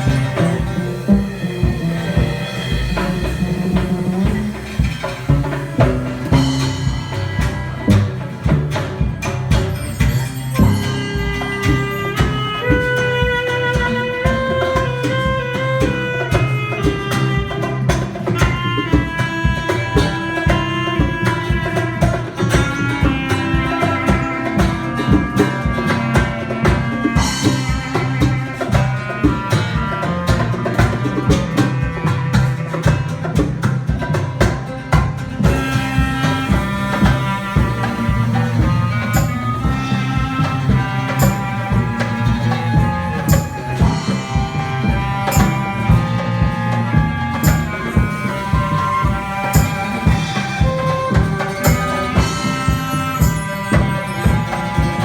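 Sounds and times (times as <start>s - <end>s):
band playing instrumental music: 0.0s - 55.0s.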